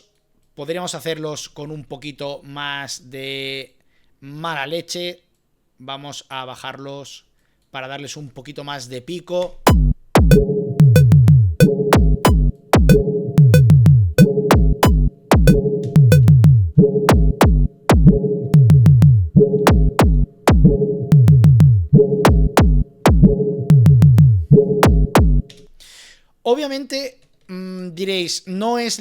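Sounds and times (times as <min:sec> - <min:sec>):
low tom hits falling in pitch: 0:09.7 - 0:24.2, 0:24.8 - 0:25.5
electronic drum beat: 0:09.7 - 0:25.5
steady electronic tone: 0:09.7 - 0:25.5.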